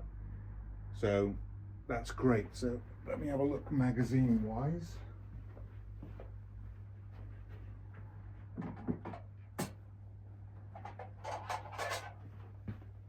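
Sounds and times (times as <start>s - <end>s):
steady low hum: 0.0s - 13.0s
plastic gear clattering and rustling: 10.8s - 12.2s.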